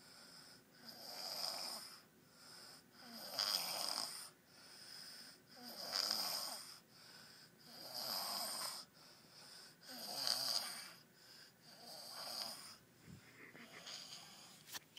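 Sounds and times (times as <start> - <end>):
soft breath: 0.0 - 0.8, 1.9 - 3.1, 4.2 - 5.6, 6.6 - 7.7, 8.7 - 9.9, 10.6 - 11.8, 12.5 - 14.8
loud snoring: 0.8 - 2.0, 3.0 - 4.4, 5.6 - 6.8, 7.6 - 8.9, 9.8 - 11.0, 11.7 - 12.8.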